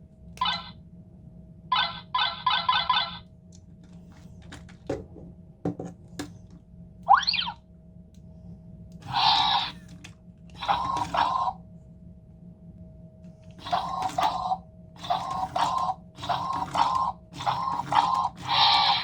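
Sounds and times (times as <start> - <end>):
toy robot electronic bursts: 0.4 - 0.7, 1.7 - 3.2, 7.1 - 7.6, 9.0 - 9.9, 10.6 - 11.5, 13.6 - 19.0.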